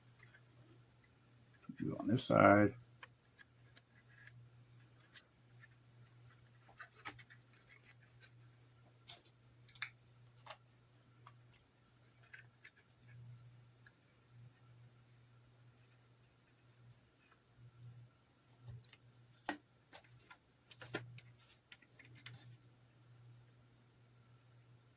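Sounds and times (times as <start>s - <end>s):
steady low hum: 0.0s - 24.9s
plastic parts clicking and scratching: 2.8s - 14.0s, 18.6s - 22.7s.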